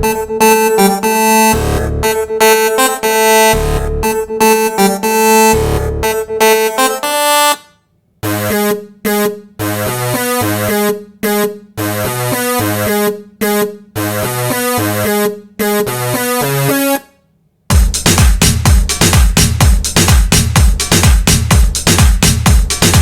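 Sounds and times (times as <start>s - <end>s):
keyboard phrase: 0.0s - 7.6s
choppy synth riff over bass: 0.0s - 17.0s, 17.7s - 23.0s.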